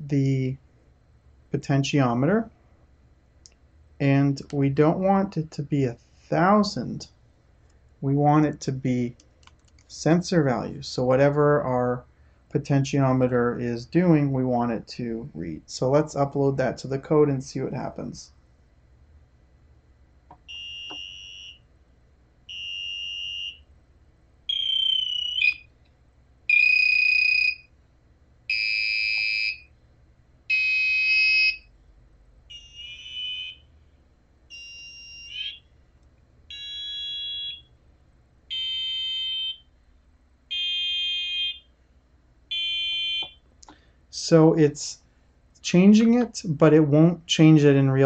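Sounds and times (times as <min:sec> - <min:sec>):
buzzer beeps: 0:20.5 - 0:21.6, 0:34.5 - 0:35.6, 0:38.5 - 0:39.6, 0:40.5 - 0:41.6, 0:42.5 - 0:43.4.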